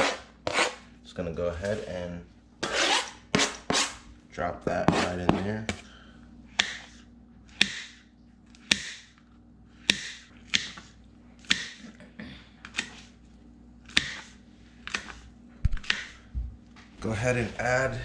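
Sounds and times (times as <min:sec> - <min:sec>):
knife blade scraping: 0:00.0 - 0:00.8, 0:02.6 - 0:04.0
knife chopping on cutting board: 0:00.0 - 0:00.8, 0:02.6 - 0:04.0, 0:04.9 - 0:05.8, 0:06.6 - 0:08.0, 0:08.6 - 0:09.1, 0:09.8 - 0:11.8, 0:13.9 - 0:16.3.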